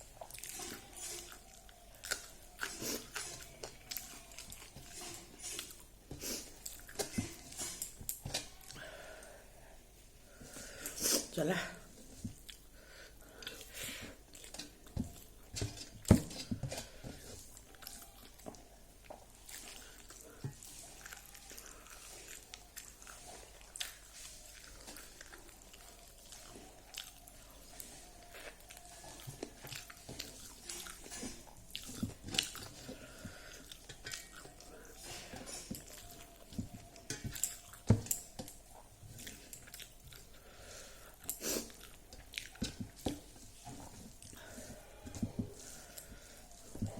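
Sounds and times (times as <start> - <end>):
person chewing crunchy food: 0.0 - 9.3, 10.3 - 46.9.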